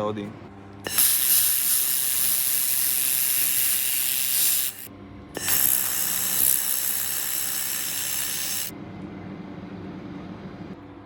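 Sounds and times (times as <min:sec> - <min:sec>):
laser welder hissing: 0:00.9 - 0:08.7.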